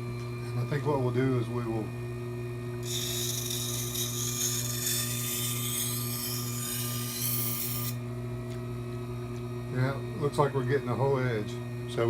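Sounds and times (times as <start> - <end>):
electric motor hum: 0.0 - 12.0
knife scraping on grinding wheel: 2.8 - 8.0.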